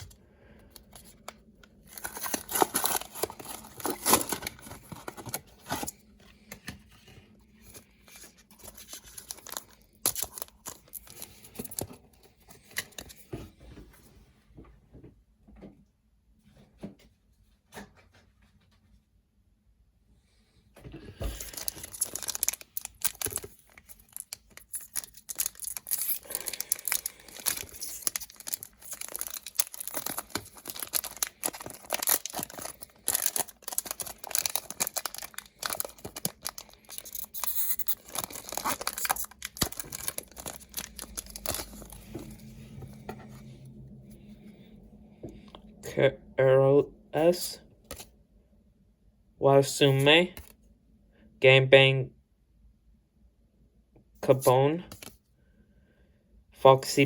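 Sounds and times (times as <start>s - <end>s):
foil wrapper tearing and crinkling: 1.8s - 5.8s, 21.4s - 42.0s.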